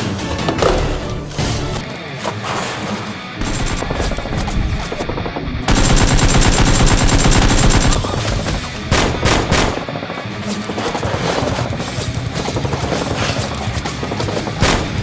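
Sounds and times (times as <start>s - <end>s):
machine-gun fire: 5.1s - 9.9s, 14.5s - 15.0s.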